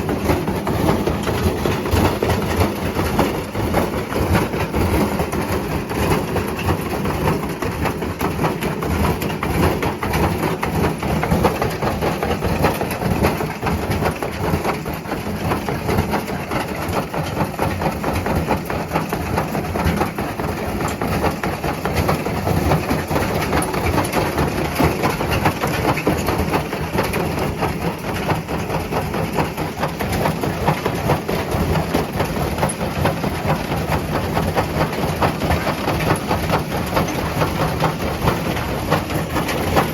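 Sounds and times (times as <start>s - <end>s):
washing machine drum rumbling: 0.0s - 39.9s.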